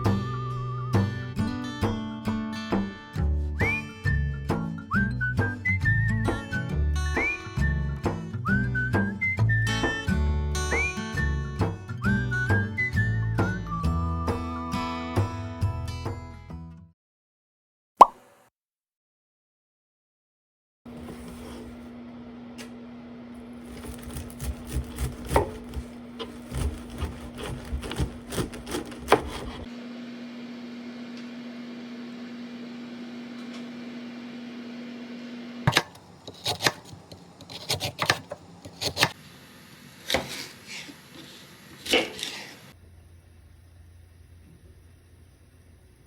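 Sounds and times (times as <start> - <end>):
steady hum: 42.7 - 46.0.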